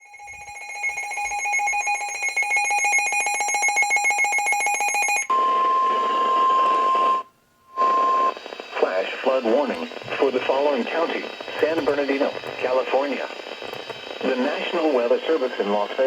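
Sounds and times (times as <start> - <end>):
steady warning alarm tone: 0.0 - 6.0, 9.3 - 15.9
radio static: 7.8 - 16.0.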